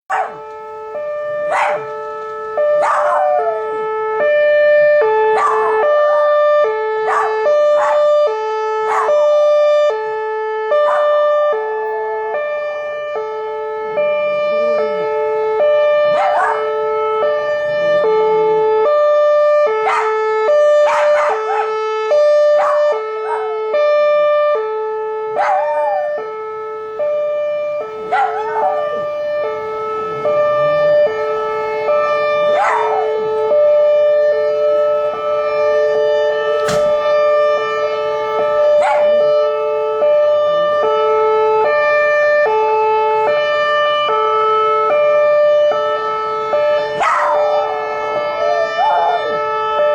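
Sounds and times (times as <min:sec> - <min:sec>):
two-tone warning siren: 0:00.0 - 0:49.9
dog barking and yelping: 0:00.1 - 0:00.4, 0:01.5 - 0:01.9, 0:02.8 - 0:03.6, 0:05.3 - 0:06.4, 0:07.0 - 0:08.2, 0:08.8 - 0:09.2, 0:10.8 - 0:11.2, 0:16.1 - 0:16.7, 0:19.8 - 0:20.2, 0:20.8 - 0:21.8, 0:22.5 - 0:23.6, 0:25.4 - 0:26.1, 0:28.1 - 0:29.1, 0:32.5 - 0:33.2, 0:38.8 - 0:39.2, 0:47.0 - 0:47.8, 0:48.4 - 0:49.4.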